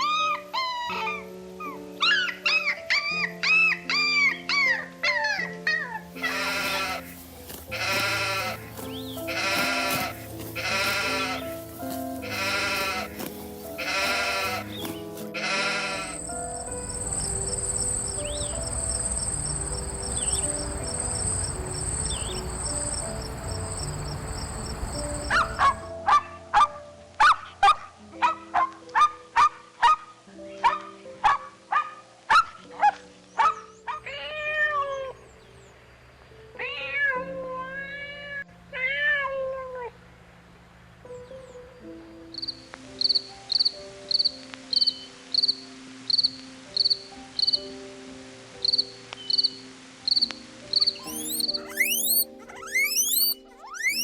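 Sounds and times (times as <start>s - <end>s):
soft background music: 0.0s - 54.0s
goats bleating: 6.2s - 11.6s, 12.2s - 14.8s, 15.4s - 16.2s
short sharp clicking calls: 51.0s - 54.0s.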